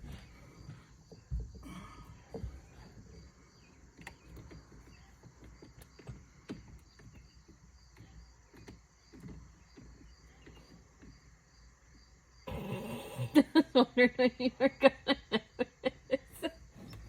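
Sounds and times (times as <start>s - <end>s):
crickets chirping: 0.0s - 17.0s.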